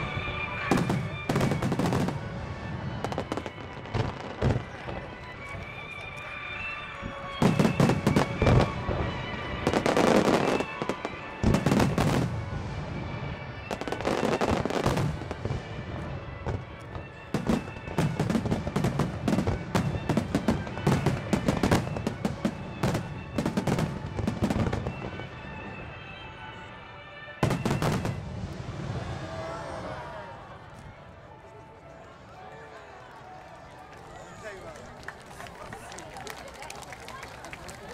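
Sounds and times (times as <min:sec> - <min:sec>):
fireworks bursting and crackling: 0:00.0 - 0:26.0, 0:27.4 - 0:30.9
music playing: 0:00.0 - 0:37.9.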